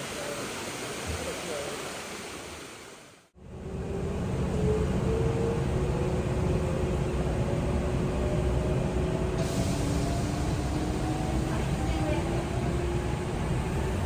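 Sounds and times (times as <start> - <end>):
train rumble inside carriage: 3.4 - 14.0.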